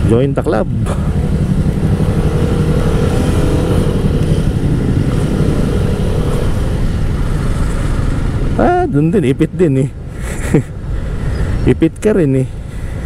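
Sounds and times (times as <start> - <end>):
motorcycle engine low rumble: 0.0 - 10.1
surrounding traffic: 0.0 - 13.0.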